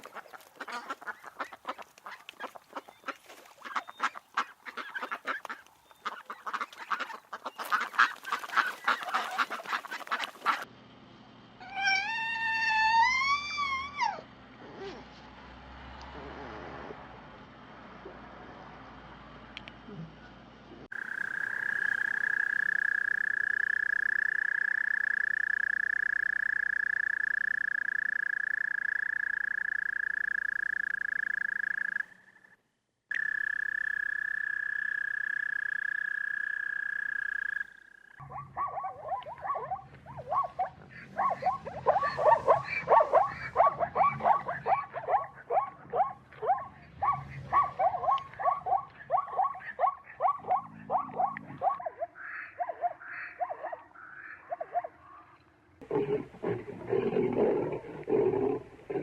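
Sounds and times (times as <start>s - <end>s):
frogs croaking chorus: 0.0s - 10.6s, 20.9s - 46.4s, 47.1s - 56.0s
frog high-pitched trill: 20.9s - 32.2s, 33.1s - 38.3s.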